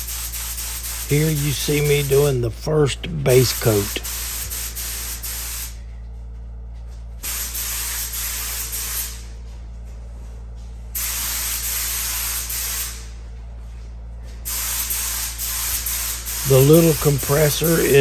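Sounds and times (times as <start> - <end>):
paint spray gun hissing: 0.0 - 5.8, 7.3 - 9.3, 11.0 - 13.1, 14.5 - 18.0
steady low hum: 0.0 - 18.0.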